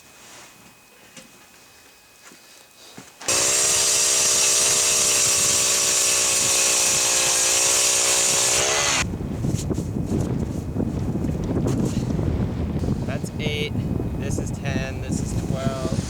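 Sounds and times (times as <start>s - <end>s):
power ice auger running: 3.2s - 9.1s
wind buffeting microphone: 4.6s - 7.3s, 8.2s - 16.0s.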